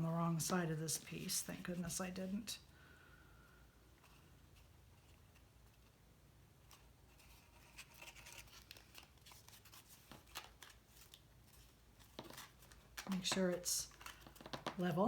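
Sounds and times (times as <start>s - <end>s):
low room hum: 0.0s - 15.0s
cardstock rustling and ticking: 6.6s - 15.0s.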